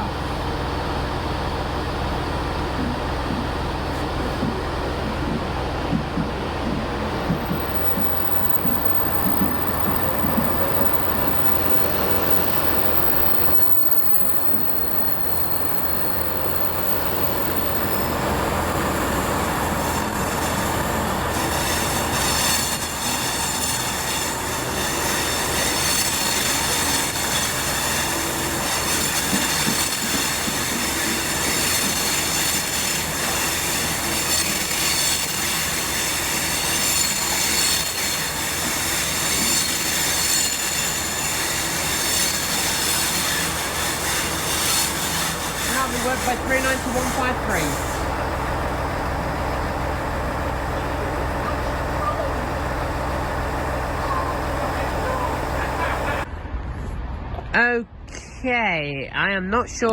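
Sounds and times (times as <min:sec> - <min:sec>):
rail rumble: 0:00.0 - 0:58.1
high steady whining tones: 0:02.2 - 0:56.3
electric train pulling away: 0:06.9 - 0:56.3
train wheels squealing on track: 0:07.4 - 0:48.1.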